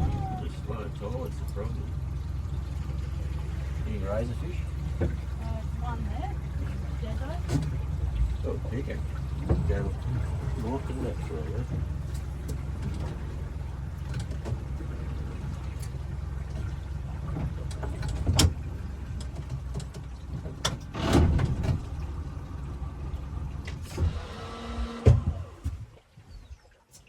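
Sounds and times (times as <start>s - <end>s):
outboard motor running: 0.0s - 26.6s
knocks from boat hull: 25.0s - 25.9s.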